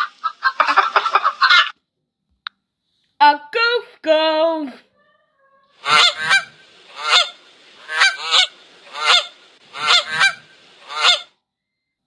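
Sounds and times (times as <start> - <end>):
goose honking: 5.8 - 11.3.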